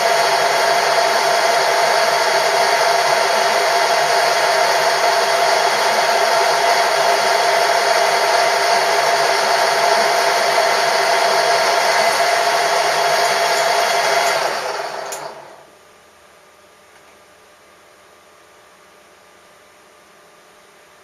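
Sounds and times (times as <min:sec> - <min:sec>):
machine tool whirring: 0:00.0 - 0:15.7.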